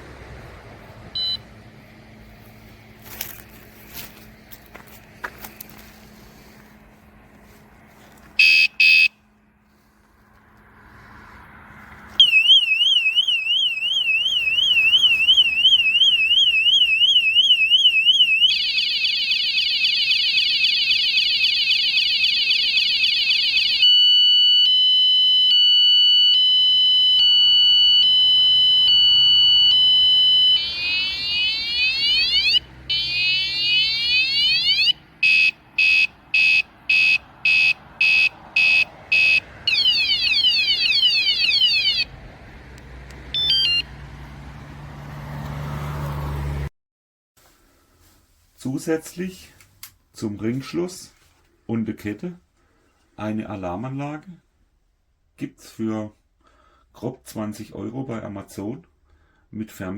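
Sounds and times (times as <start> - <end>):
bike alarm beeps: 1.2 - 1.5, 8.4 - 9.2, 12.2 - 42.0, 43.4 - 43.9
electronic alarm siren: 1.2 - 1.5, 8.4 - 9.2, 12.2 - 42.1, 43.3 - 43.9.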